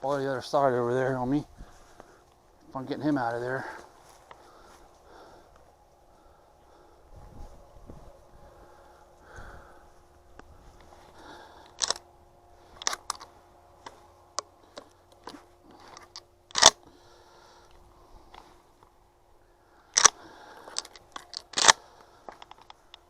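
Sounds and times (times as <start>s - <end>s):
faint rustle: 0.0s - 23.0s
twigs cracking and snapping: 10.3s - 12.0s, 12.6s - 16.8s, 19.9s - 23.0s.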